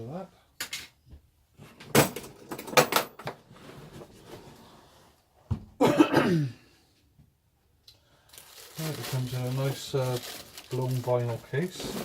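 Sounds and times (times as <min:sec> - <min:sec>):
packaging handling noise: 0:08.2 - 0:12.0.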